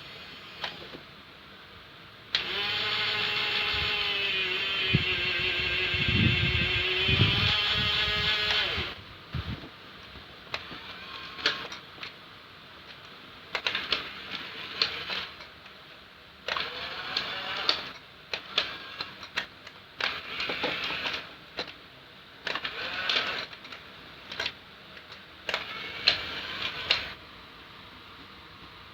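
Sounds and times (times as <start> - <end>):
small electric motors whirring: 0.0 - 1.0, 2.3 - 9.6, 10.5 - 11.8, 13.5 - 15.5, 16.5 - 21.7, 22.4 - 23.6, 25.4 - 27.2.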